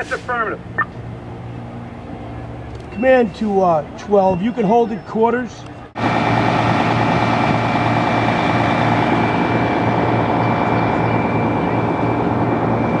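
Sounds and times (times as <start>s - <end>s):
diesel engine running: 5.6s - 13.0s.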